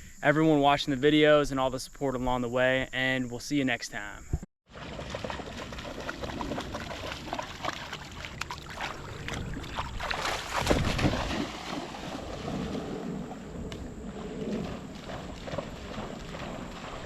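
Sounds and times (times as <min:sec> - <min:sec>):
water splashing in a river: 0:04.7 - 0:17.0
wind buffeting microphone: 0:05.6 - 0:17.0.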